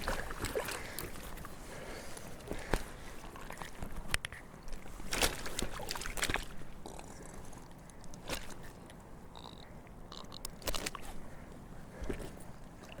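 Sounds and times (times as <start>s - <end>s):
sharp splashes and knocks: 0.0s - 1.2s, 4.7s - 6.7s, 8.2s - 8.7s, 10.5s - 11.2s
water sloshing and splashing: 0.0s - 9.3s, 10.5s - 13.0s.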